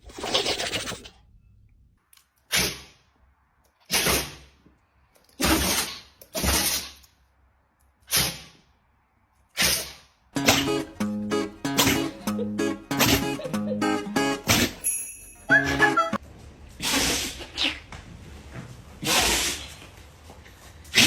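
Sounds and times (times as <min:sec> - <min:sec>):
dog sneezing: 0:02.5 - 0:02.9, 0:05.4 - 0:07.0, 0:08.1 - 0:08.6, 0:09.6 - 0:10.1, 0:16.8 - 0:17.8, 0:19.0 - 0:19.8.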